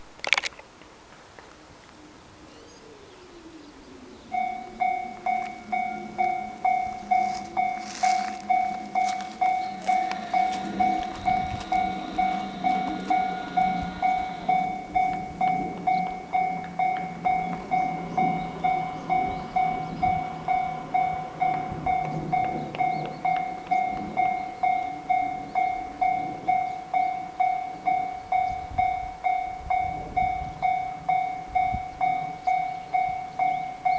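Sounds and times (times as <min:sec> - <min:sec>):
level crossing warning bell: 0:04.3 - 0:33.9
low rumble: 0:05.0 - 0:24.6.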